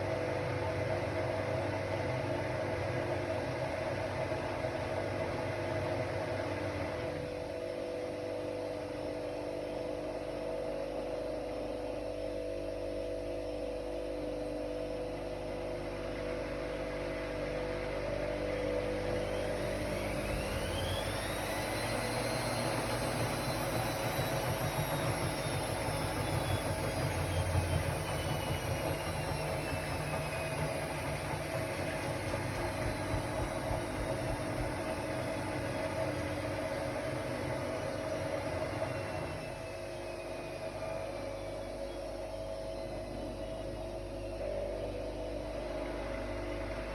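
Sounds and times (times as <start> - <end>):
washer-dryer humming: 0.0 - 12.0, 12.7 - 46.9
motor whine: 17.2 - 46.9.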